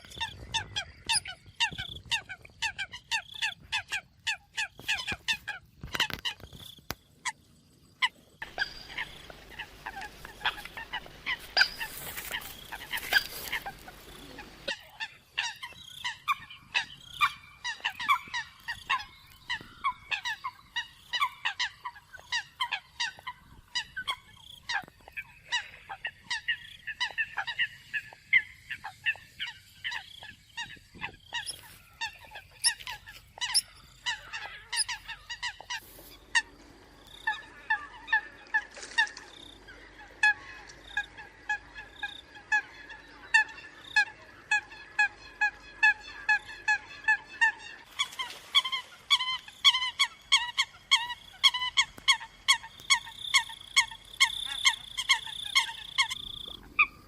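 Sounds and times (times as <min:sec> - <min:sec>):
coots honking calls: 0:08.4 - 0:57.0.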